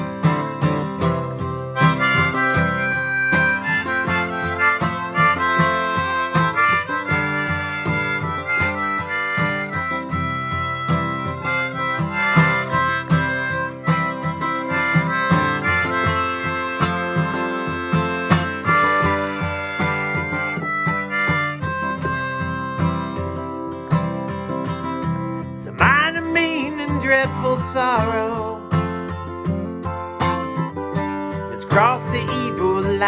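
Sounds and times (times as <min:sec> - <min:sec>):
strummed acoustic guitar: 0:00.0 - 0:33.0
harmonica melody: 0:01.0 - 0:24.7.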